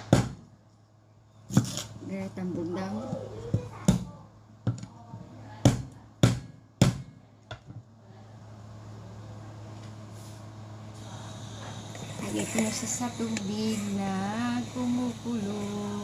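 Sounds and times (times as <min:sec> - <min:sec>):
ginger being pounded: 0:00.0 - 0:00.5, 0:05.6 - 0:07.2
steady low hum: 0:00.0 - 0:16.0.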